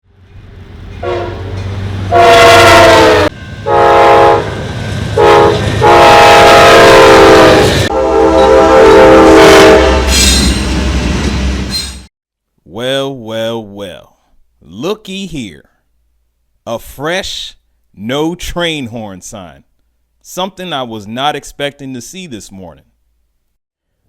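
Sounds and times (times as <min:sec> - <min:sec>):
passing train rumble: 0:00.0 - 0:12.1
locomotive air horn blasts: 0:01.0 - 0:10.2.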